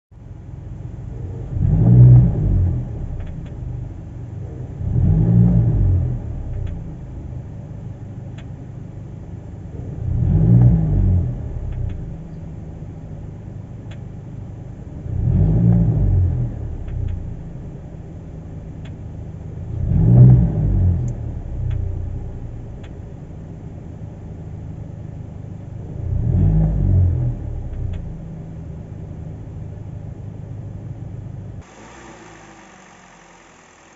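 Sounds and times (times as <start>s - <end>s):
car engine revving: 1.1s - 3.5s, 4.4s - 7.2s, 9.7s - 12.3s, 14.9s - 17.6s, 19.6s - 22.9s, 25.8s - 28.4s, 31.6s - 33.9s.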